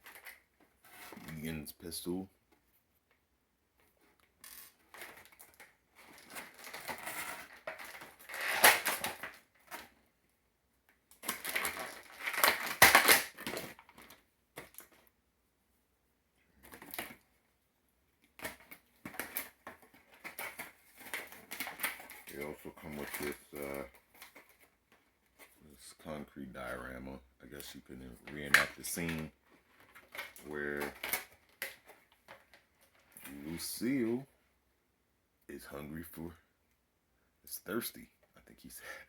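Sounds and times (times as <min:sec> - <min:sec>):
plastic packaging crackling: 0:04.9 - 0:09.9, 0:11.1 - 0:15.0, 0:18.3 - 0:24.8.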